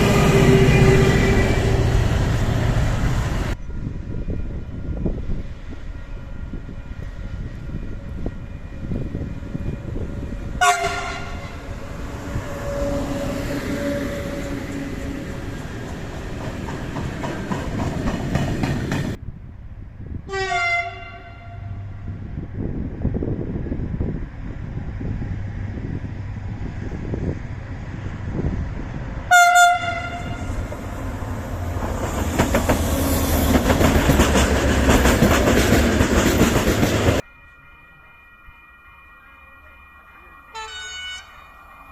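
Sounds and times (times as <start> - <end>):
train horn: 0.0 - 2.4, 10.5 - 15.3, 20.3 - 22.1, 29.3 - 30.7, 40.4 - 41.6
train running on rails: 0.0 - 41.9.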